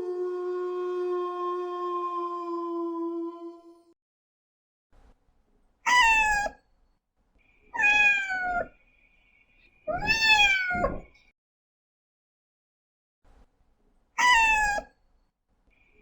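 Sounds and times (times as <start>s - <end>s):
cat meowing: 5.9s - 6.5s, 7.8s - 8.7s, 9.9s - 11.0s, 14.2s - 14.8s.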